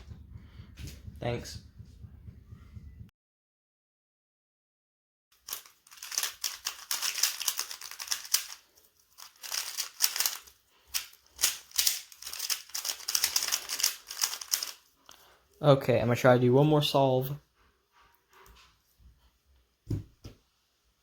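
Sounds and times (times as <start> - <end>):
puzzle cube clicking: 5.5 - 8.6, 9.2 - 14.8.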